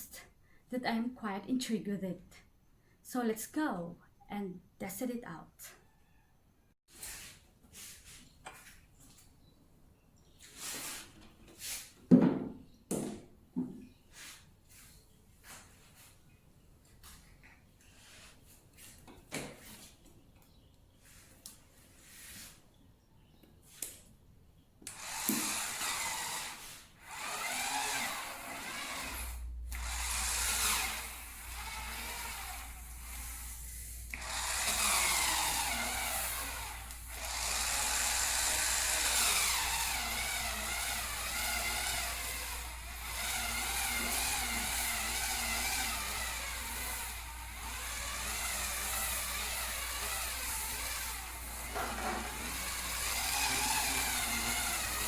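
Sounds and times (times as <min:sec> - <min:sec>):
spin scrubber motor whirring: 0:24.9 - 0:55.0.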